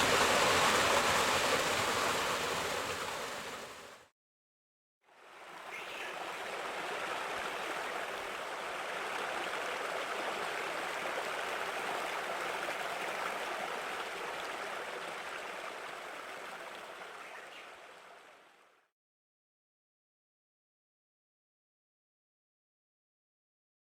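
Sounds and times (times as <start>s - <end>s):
waterfall splashing and rushing: 0.0s - 3.9s.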